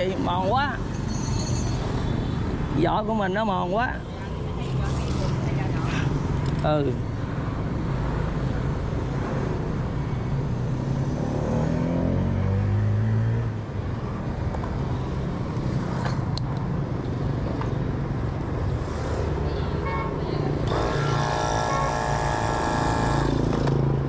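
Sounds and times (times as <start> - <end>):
street traffic: 0.0 - 24.0
vehicle engine revving past: 11.2 - 13.4.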